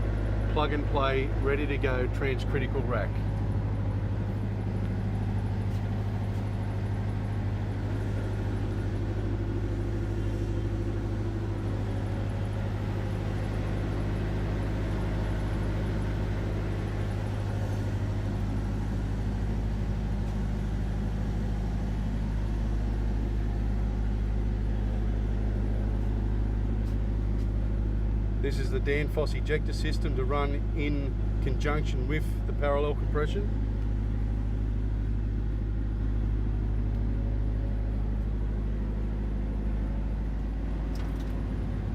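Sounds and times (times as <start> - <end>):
engine idling: 0.0 - 41.9.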